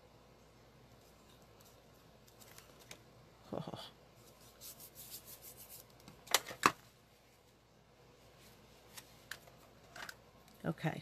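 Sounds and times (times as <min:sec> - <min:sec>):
paper rustling: 0:01.5 - 0:03.0.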